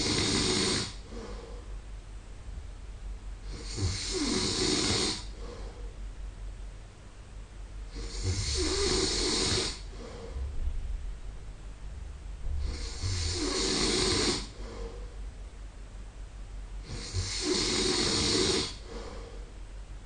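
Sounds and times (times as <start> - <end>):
man snoring: 0.0 - 1.3, 3.4 - 5.5, 7.9 - 10.4, 12.6 - 15.0, 16.8 - 19.2
quiet breathing: 0.0 - 2.0, 3.4 - 6.2, 7.9 - 11.2, 11.9 - 15.5, 16.8 - 19.8.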